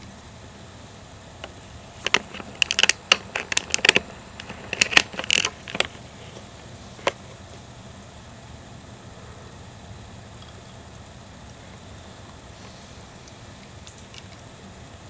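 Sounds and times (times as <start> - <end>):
plastic packaging clicks and crinkles: 1.4 - 7.4.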